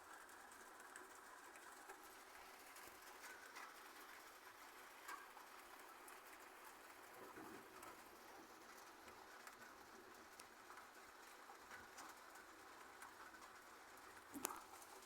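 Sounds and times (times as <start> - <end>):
soft ticks: 10.3 - 10.9, 14.4 - 15.0.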